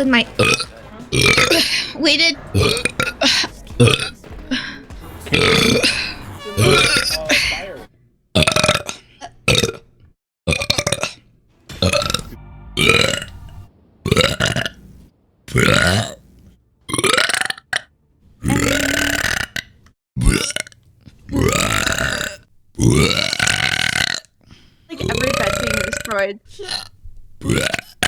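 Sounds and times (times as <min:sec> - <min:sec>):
person burping: 0:02.5 - 0:04.1, 0:05.3 - 0:07.8, 0:08.4 - 0:09.9, 0:10.5 - 0:11.2, 0:16.9 - 0:28.0.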